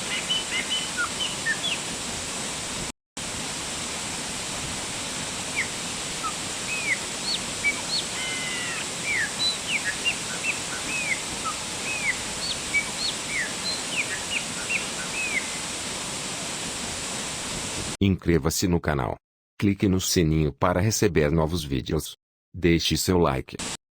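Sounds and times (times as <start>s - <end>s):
birds chirping: 0.0s - 1.9s, 5.4s - 15.7s
waterfall rushing: 0.0s - 18.0s.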